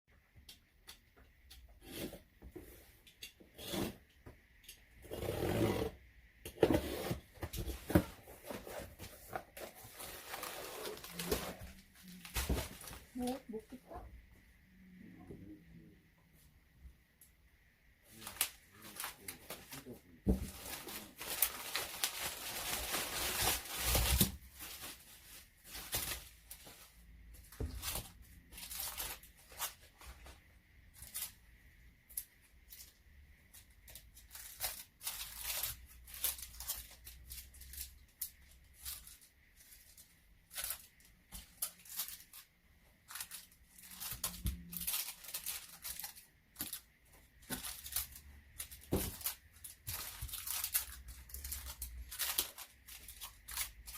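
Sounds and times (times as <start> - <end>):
packaging rustling and crinkling: 6.6 - 13.8, 18.1 - 31.4, 32.2 - 53.9
packaging tearing: 47.6 - 53.9.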